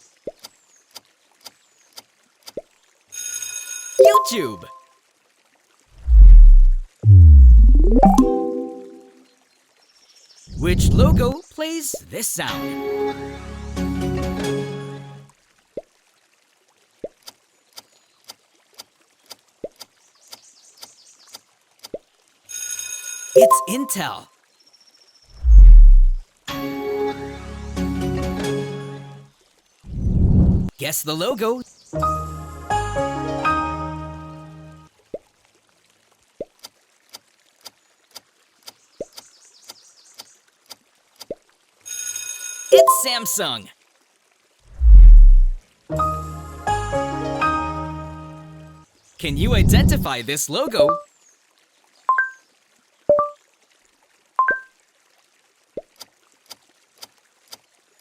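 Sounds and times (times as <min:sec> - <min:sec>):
drip-like plops rising in pitch: 0:04.0 - 0:04.8, 0:06.0 - 0:09.2, 0:23.4 - 0:24.0, 0:42.7 - 0:43.3, 0:53.1 - 0:53.4
water-drop bloops: 0:04.0 - 0:04.8, 0:06.0 - 0:09.2, 0:23.4 - 0:24.1, 0:25.4 - 0:26.2, 0:42.7 - 0:43.7, 0:44.8 - 0:45.6, 0:53.1 - 0:53.4.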